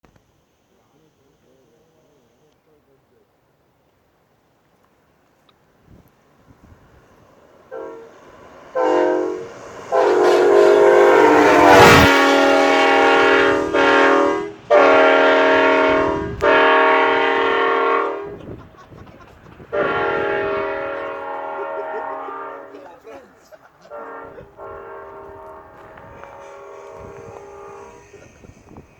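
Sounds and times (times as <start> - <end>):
air horn blasts: 7.7 - 18.4, 19.7 - 22.8, 23.9 - 28.2.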